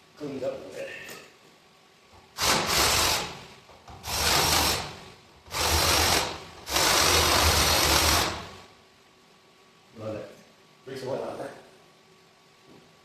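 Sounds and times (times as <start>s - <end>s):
power drill cutting steel: 2.4s - 3.3s, 4.1s - 4.9s, 5.5s - 8.5s.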